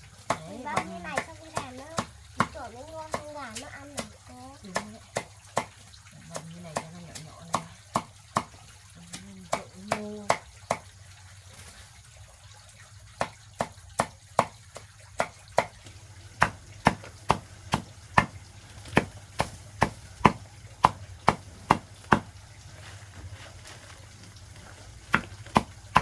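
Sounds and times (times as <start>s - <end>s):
blade chopping plant stalk: 16.4s - 22.3s, 25.0s - 26.0s.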